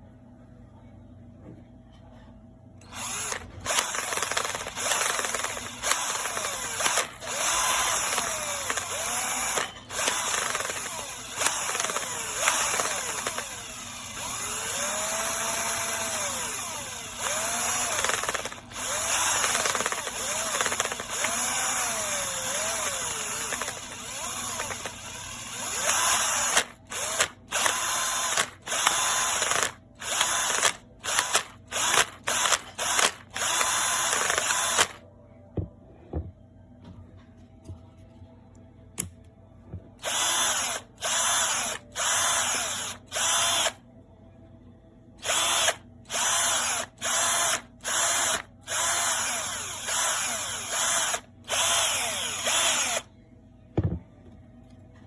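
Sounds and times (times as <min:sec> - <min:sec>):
cordless drill motor running: 0:02.8 - 0:35.0, 0:40.0 - 0:43.8, 0:45.2 - 0:53.1.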